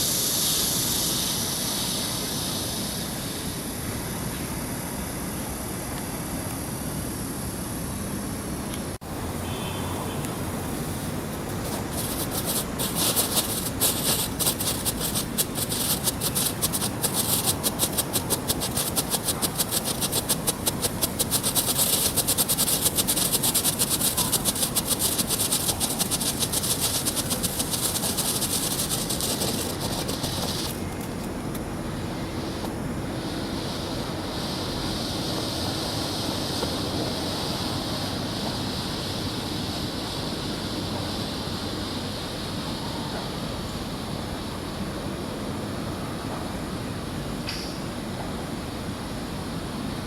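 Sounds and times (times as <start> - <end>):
firework crackling pops: 10.2 - 40.1
wind noise: 10.3 - 43.1.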